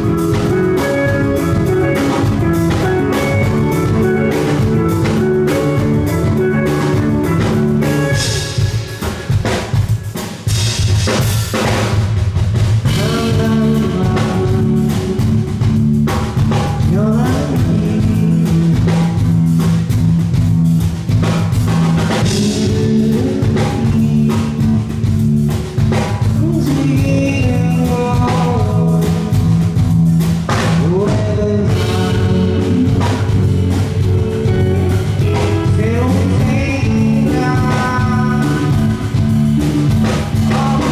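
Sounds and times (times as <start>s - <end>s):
person singing: 0.0s - 9.3s, 12.9s - 16.0s, 16.8s - 19.4s, 22.2s - 25.3s, 26.2s - 29.8s, 30.8s - 40.9s
drum kit beat: 0.0s - 40.9s
rock band playing: 0.0s - 40.9s.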